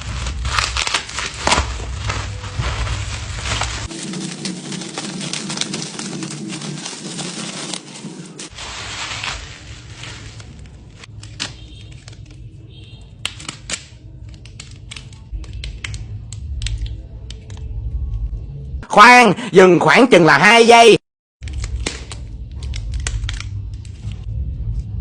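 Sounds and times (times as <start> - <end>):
plastic crinkling and tearing: 0.0 - 12.6, 21.4 - 24.2
packaging clicks and rustles: 0.1 - 12.5.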